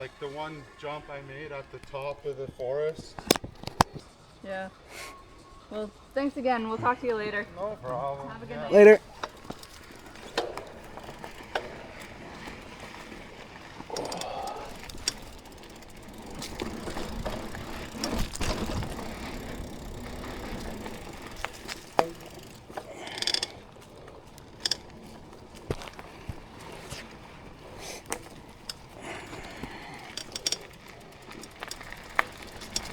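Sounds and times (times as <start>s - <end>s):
bike rolling over trail: 0.0s - 4.7s, 5.6s - 32.9s
bike knocks and rattles: 1.8s - 4.2s, 8.9s - 32.9s
freehub ratchet clicking: 9.0s - 32.9s.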